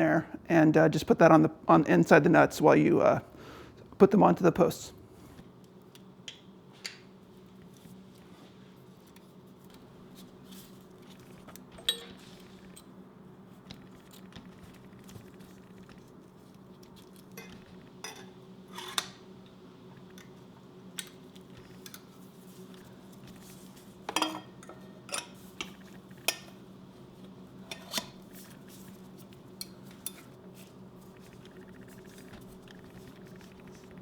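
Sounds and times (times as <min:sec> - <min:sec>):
steady low hum: 0:07.2 - 0:34.0.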